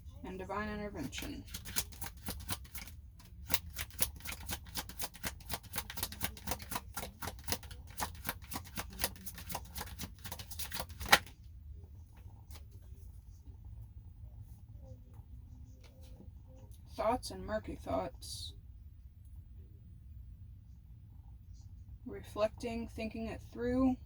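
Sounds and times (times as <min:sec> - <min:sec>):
cards being shuffled: 0:01.0 - 0:11.3
faint card handling: 0:01.1 - 0:11.3
card snap: 0:01.5 - 0:11.3.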